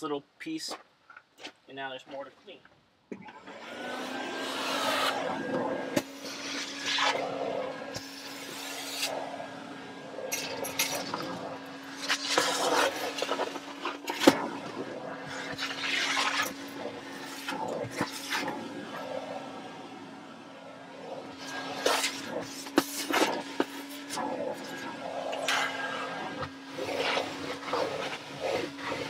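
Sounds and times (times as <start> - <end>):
vacuum cleaner running: 3.2 - 29.0
nozzle scraping and sucking debris: 4.4 - 19.6, 21.0 - 29.0.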